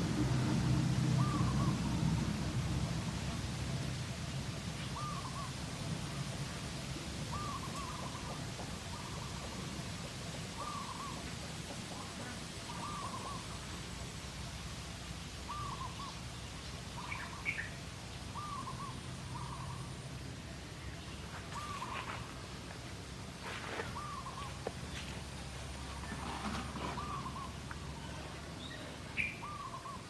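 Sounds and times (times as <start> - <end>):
bird hooting call: 1.2 - 2.2, 4.9 - 5.6, 7.3 - 9.4, 10.6 - 11.3, 12.7 - 13.5, 15.5 - 16.2, 18.3 - 19.9, 21.6 - 22.2, 24.0 - 24.6, 26.8 - 28.2, 29.2 - 30.0.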